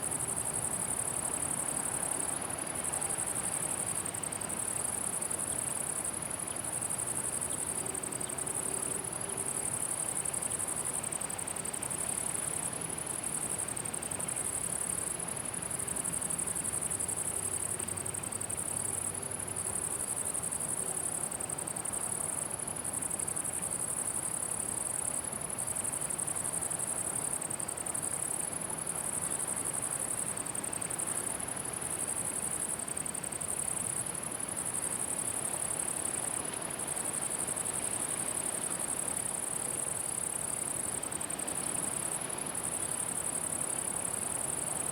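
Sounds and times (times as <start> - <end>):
crickets chirping: 0.0 - 44.9.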